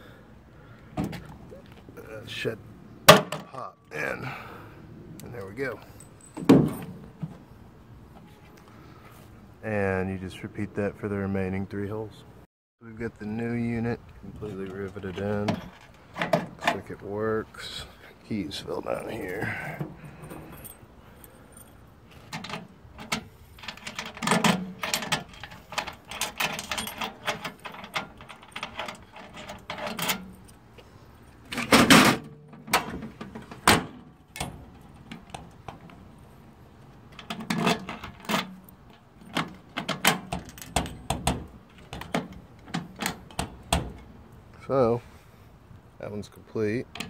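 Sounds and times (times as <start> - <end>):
latch clunk: 6.3 - 7.4, 15.1 - 16.9, 22.2 - 30.6, 31.5 - 36.1, 37.0 - 44.2
keys jangling: 19.0 - 24.2, 24.8 - 30.6
metal latch clicks and rattles: 22.1 - 30.6, 31.5 - 36.1, 36.9 - 44.2.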